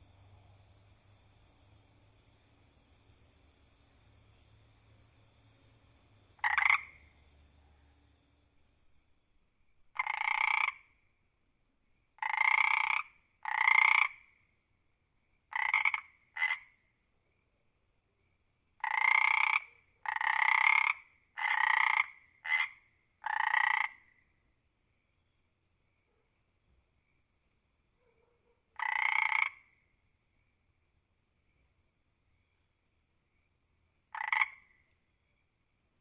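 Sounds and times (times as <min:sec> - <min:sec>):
frog croaking: 0:06.2 - 0:08.0, 0:09.9 - 0:11.0, 0:12.2 - 0:14.4, 0:15.5 - 0:16.8, 0:18.8 - 0:24.3, 0:28.7 - 0:29.9, 0:34.1 - 0:35.0.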